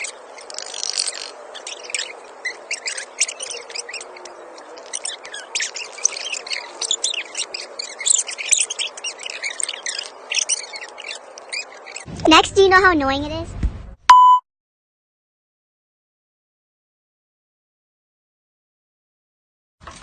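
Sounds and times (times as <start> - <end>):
small birds chirping: 0.0 - 12.1.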